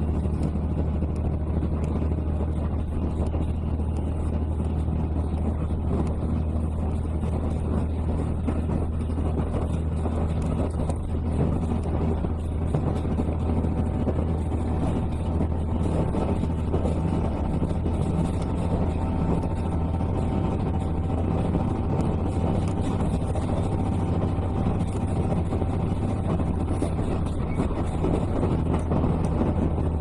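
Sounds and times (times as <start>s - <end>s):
railcar drone and rumble: 0.0s - 30.0s.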